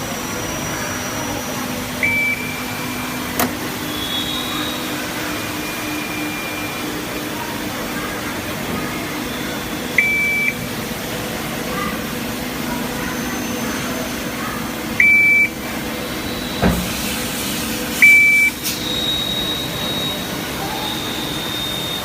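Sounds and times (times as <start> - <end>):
short high beeps: 2.0 - 3.1, 10.0 - 10.6, 15.0 - 15.5.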